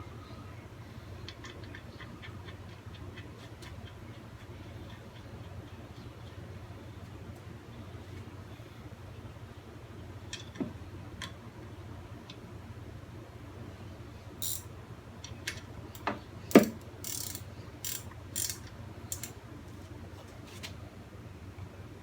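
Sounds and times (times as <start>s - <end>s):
socket ratchet clicking: 14.4s - 14.7s, 16.0s - 19.4s.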